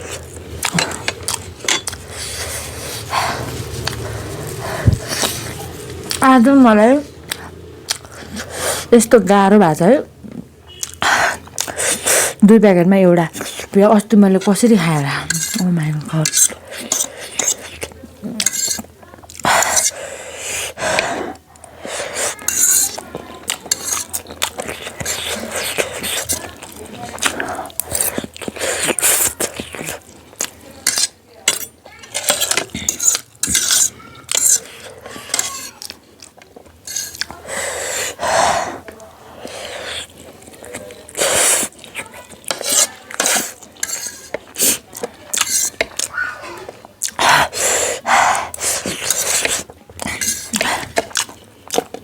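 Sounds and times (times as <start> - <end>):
chewing: 0.0 - 6.3, 7.2 - 8.9, 10.7 - 12.4, 13.3 - 13.8, 14.4 - 52.0
eating sounds: 0.0 - 9.1, 10.3 - 52.0
cutlery clinking against dish: 0.6 - 2.0, 15.3 - 19.9, 22.3 - 26.4, 30.4 - 37.4, 41.9 - 46.1, 48.8 - 52.0
person slurping noodles: 36.8 - 40.2, 41.1 - 45.8, 47.0 - 51.0.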